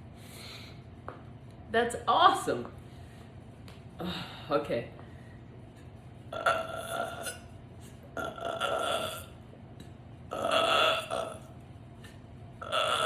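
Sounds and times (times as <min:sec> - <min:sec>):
woman belching: 0:06.3 - 0:07.4, 0:08.2 - 0:09.4, 0:10.3 - 0:11.4, 0:12.6 - 0:13.0.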